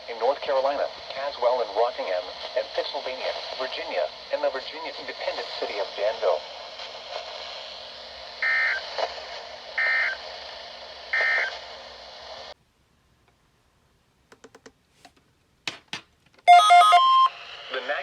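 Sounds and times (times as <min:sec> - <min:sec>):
radio static: 0:00.0 - 0:12.6, 0:17.3 - 0:18.0.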